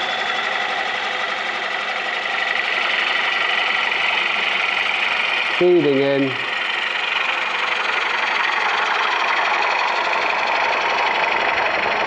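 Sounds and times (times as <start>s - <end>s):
wood lathe gouge cutting: 0.0s - 12.0s.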